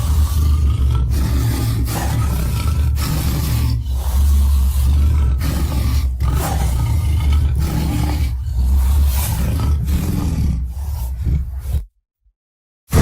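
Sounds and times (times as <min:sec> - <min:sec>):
deep rumbling growl-roar: 0:00.0 - 0:11.9.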